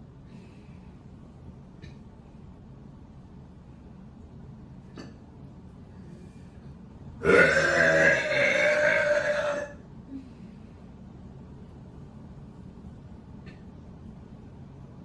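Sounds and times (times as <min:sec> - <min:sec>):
woman burping loudly: 0:07.2 - 0:09.8.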